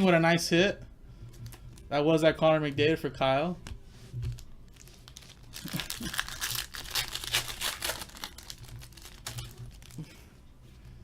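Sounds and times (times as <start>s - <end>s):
foil wrapper crinkling and tearing: 4.3s - 10.2s.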